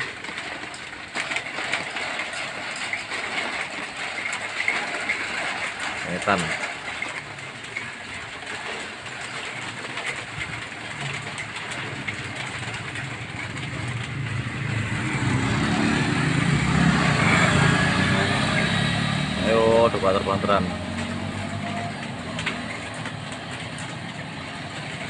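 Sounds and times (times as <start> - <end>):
vehicle engine approaching: 0.0 - 25.0
heavy rain hissing: 10.6 - 23.8.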